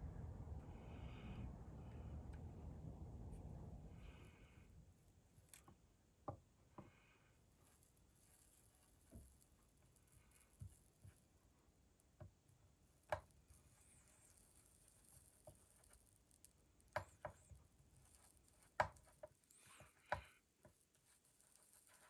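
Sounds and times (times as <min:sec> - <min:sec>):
plastic welding tool tapping: 0:13.0 - 0:13.6, 0:14.3 - 0:22.0.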